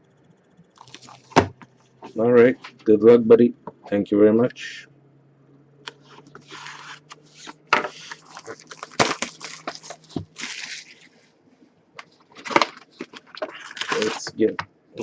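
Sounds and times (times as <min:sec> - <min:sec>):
wrapper tearing and crinkling: 0:00.8 - 0:01.4, 0:06.4 - 0:11.2, 0:12.3 - 0:14.3
cardboard clicks and knocks: 0:00.8 - 0:01.7.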